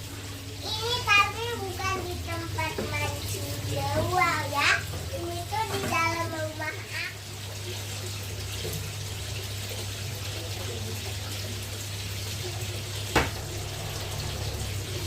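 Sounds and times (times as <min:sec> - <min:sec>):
water running into pond: 0:00.0 - 0:15.0
low hum: 0:13.3 - 0:15.0.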